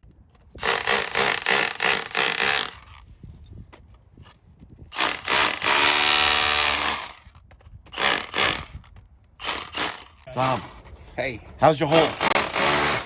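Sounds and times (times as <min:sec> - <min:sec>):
power tool cutting pipe: 0:11.9 - 0:13.0.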